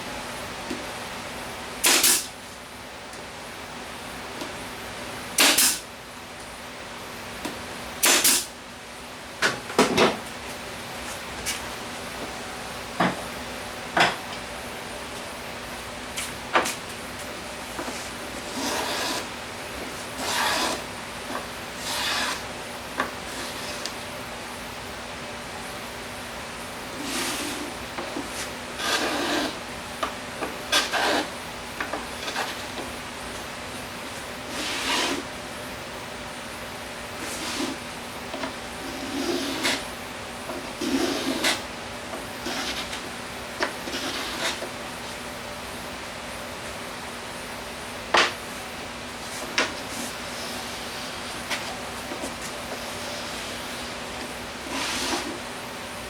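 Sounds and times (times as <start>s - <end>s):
objects knocking on workbench: 13.0s - 13.2s
wood scraping against wood: 17.8s - 19.3s, 20.0s - 22.5s, 27.0s - 29.6s, 30.7s - 32.9s, 34.5s - 35.3s, 37.2s - 39.8s, 40.5s - 44.7s, 49.2s - 55.5s
short scrape: 54.7s - 55.4s.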